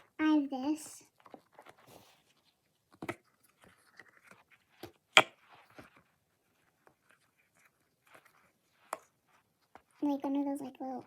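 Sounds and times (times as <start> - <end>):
plush toy handling rustles: 1.1 - 4.8.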